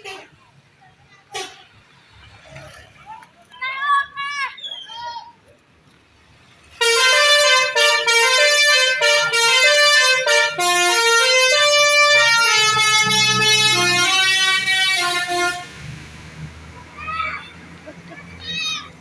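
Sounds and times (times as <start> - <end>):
bus horn playing a tune: 0.0 - 0.3, 1.3 - 1.7, 6.8 - 15.9.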